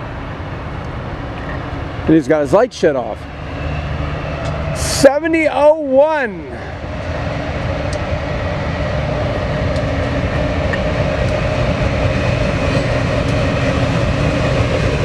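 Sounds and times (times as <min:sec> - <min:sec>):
diesel locomotive rumbling past: 0:00.0 - 0:15.0.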